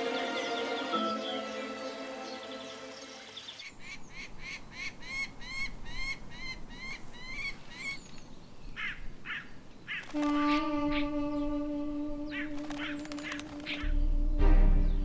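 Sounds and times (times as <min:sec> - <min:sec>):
music: 0:00.0 - 0:03.6, 0:10.3 - 0:15.0
short rising-and-falling calls: 0:09.9 - 0:14.2.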